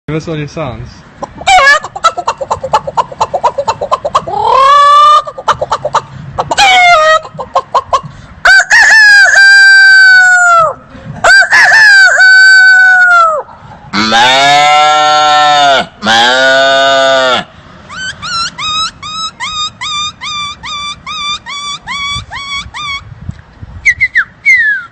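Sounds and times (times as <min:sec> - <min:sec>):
man imitating chicken clucking: 0:01.2 - 0:23.1
man imitating rooster crowing: 0:04.3 - 0:05.3, 0:08.5 - 0:18.1.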